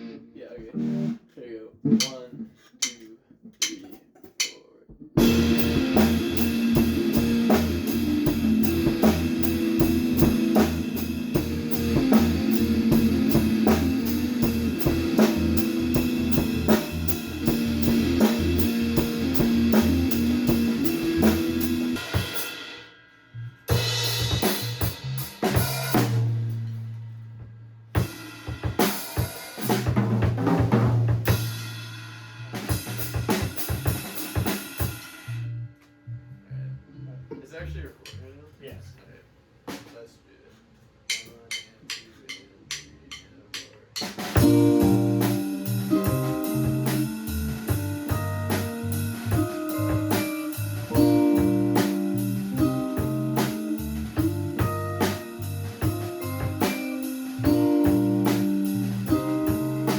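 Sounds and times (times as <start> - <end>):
band playing drums bass guitar: 0.0 - 1.2, 1.8 - 3.0, 3.6 - 22.8, 23.6 - 27.0, 28.0 - 35.4, 44.0 - 59.9
low bass notes: 0.0 - 1.2, 5.2 - 22.3, 35.3 - 38.5, 44.4 - 59.9
drum hits: 1.8 - 22.5, 32.6 - 35.0, 41.1 - 59.9.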